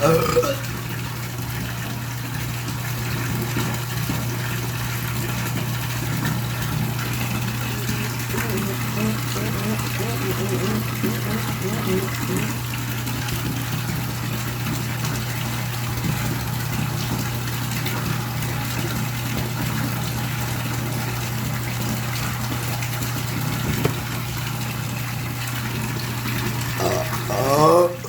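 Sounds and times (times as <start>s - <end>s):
person burping: 0.0s - 0.8s, 7.8s - 12.6s, 26.8s - 28.0s.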